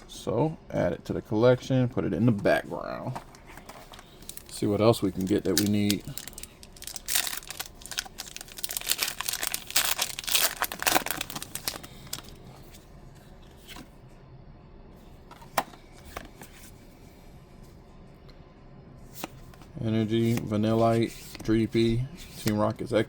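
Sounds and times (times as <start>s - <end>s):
foil wrapper crinkling and tearing: 4.0s - 12.4s.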